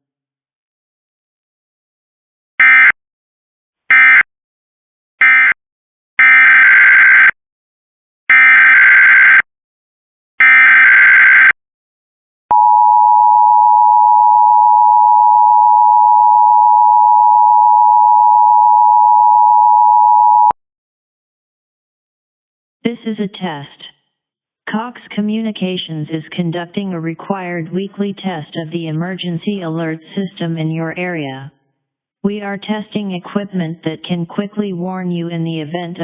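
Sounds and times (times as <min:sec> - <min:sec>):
steady two-tone attention signal: 0:12.5 - 0:20.5.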